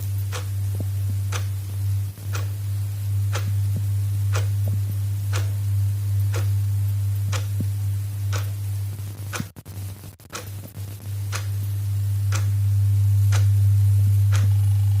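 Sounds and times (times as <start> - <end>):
clock ticking: 0.0 - 8.6, 9.2 - 9.6, 10.2 - 11.7, 12.3 - 12.6, 13.2 - 13.6, 14.2 - 14.7
steady low hum: 0.0 - 15.0.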